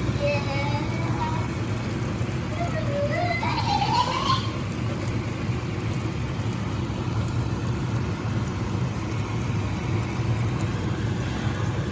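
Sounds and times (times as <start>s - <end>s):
fish sizzling in oil: 0.0s - 11.9s.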